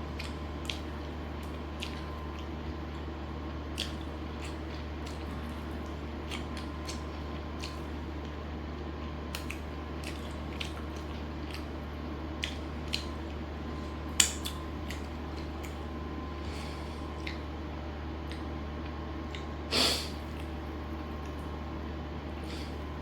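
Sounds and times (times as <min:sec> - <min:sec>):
steady low hum: 0:00.0 - 0:23.0
wet chewing: 0:00.1 - 0:08.4, 0:09.3 - 0:15.9, 0:16.5 - 0:17.5.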